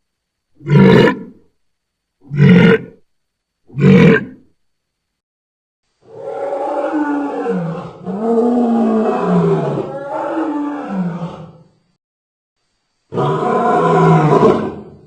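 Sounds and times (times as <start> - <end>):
creature roar: 3.8 - 4.4, 6.1 - 11.6, 13.1 - 15.0.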